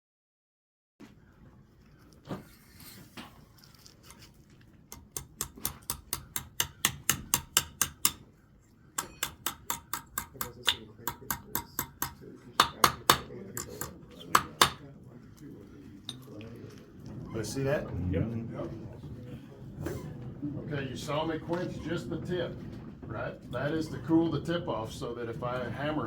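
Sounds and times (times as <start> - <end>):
hammer striking iron on anvil: 4.9 - 8.3, 9.0 - 14.8.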